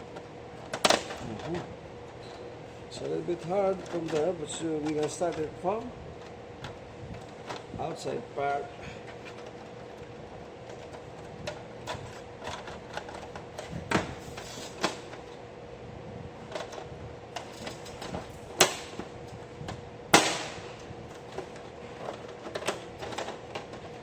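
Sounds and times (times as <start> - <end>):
sharp plastic knocks: 20.2 - 21.6
plastic parts clicking: 21.2 - 24.0.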